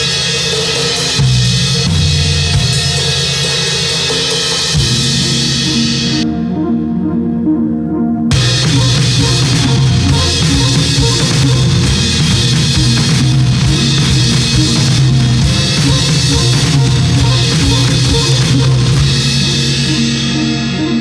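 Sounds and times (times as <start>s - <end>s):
drum kit playing busy beat: 0.0s - 5.7s, 8.3s - 19.8s
bass line: 4.8s - 21.0s
sustained guitar and synth tones: 5.2s - 21.0s.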